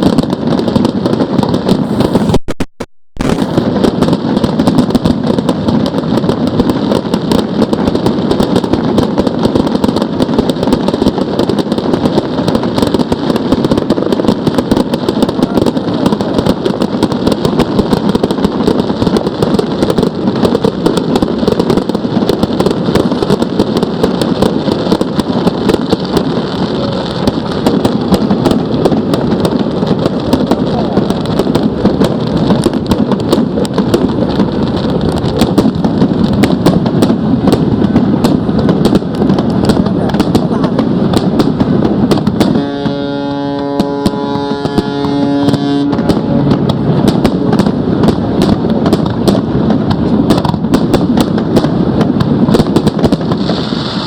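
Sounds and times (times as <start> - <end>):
fireworks bangs and crackles: 0.0 - 2.6, 3.2 - 54.0.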